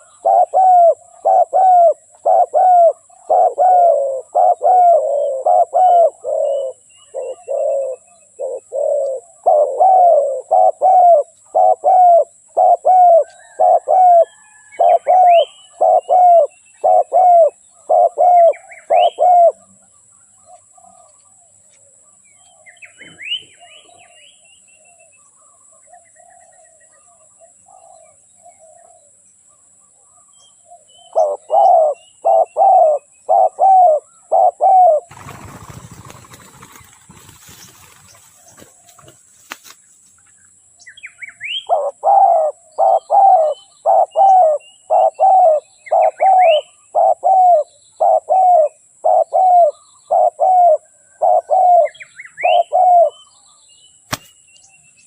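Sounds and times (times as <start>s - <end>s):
dove cooing: 0.0s - 19.7s, 31.1s - 39.2s, 41.5s - 53.2s
small birds chirping: 0.0s - 55.0s.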